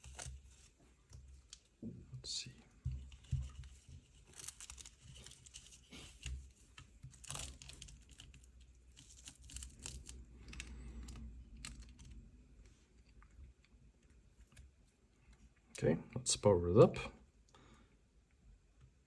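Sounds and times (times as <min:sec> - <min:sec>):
packaging crinkling and tearing: 0:04.3 - 0:06.3, 0:07.1 - 0:12.0.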